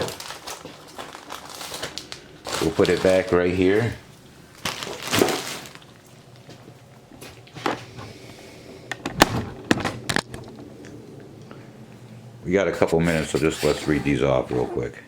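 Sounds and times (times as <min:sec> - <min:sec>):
plastic bags rustling: 0:00.0 - 0:07.9, 0:12.8 - 0:15.0.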